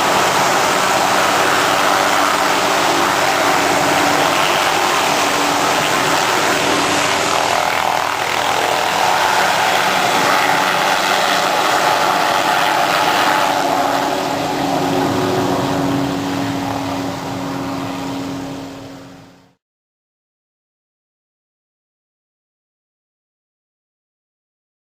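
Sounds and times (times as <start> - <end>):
helicopter rotor and engine drone: 0.0 - 19.6.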